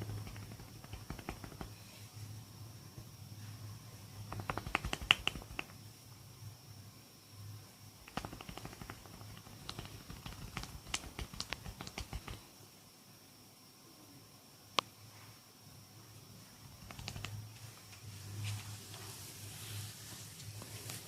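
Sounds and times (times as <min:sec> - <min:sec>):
hands snapping and clicking: 0:00.0 - 0:01.7, 0:04.3 - 0:05.8, 0:08.0 - 0:12.4, 0:16.8 - 0:17.4.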